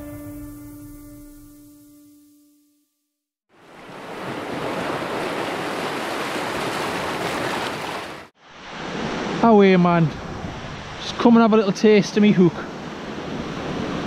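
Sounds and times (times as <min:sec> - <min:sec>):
music: 0:00.0 - 0:03.1
surf washing on beach: 0:03.5 - 0:14.0
wind on microphone: 0:10.1 - 0:11.2.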